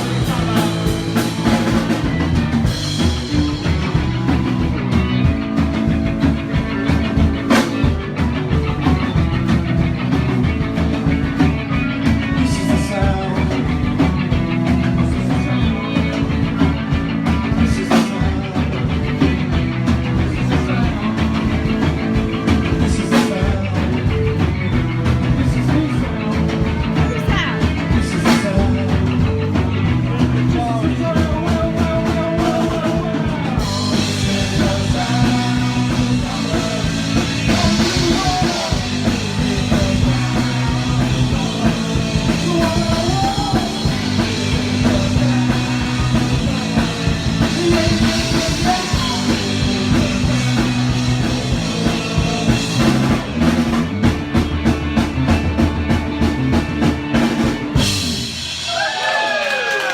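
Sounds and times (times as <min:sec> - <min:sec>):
punk rock band playing live: 0:00.0 - 0:59.9.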